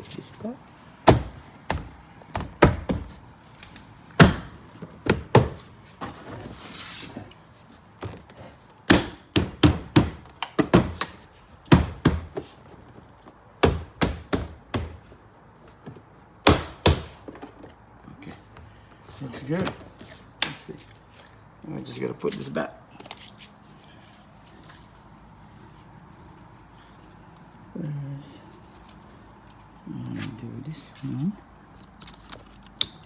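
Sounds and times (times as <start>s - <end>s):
plastic trim knocking and snapping: 1.1s - 3.2s, 4.2s - 5.7s.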